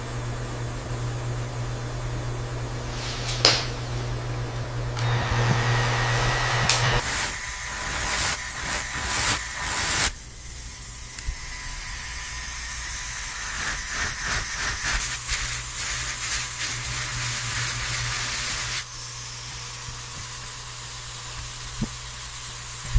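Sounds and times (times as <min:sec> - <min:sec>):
sharp bursts: 0:05.0 - 0:18.8
steady hiss of spray: 0:06.8 - 0:19.6.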